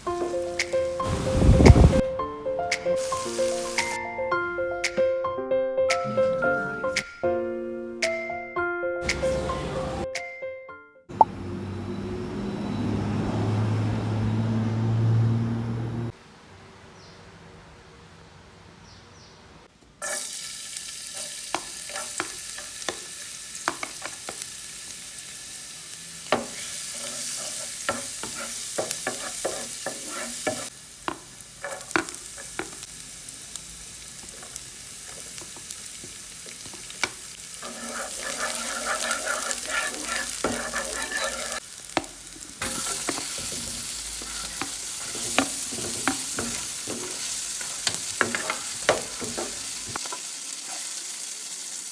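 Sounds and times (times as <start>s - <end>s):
food sizzling in a pan: 0.0s - 2.2s, 3.0s - 4.0s, 9.1s - 10.1s, 20.0s - 51.9s
utensil scraping a pan: 1.0s - 2.0s, 21.2s - 24.4s, 26.3s - 32.9s, 34.2s - 50.0s.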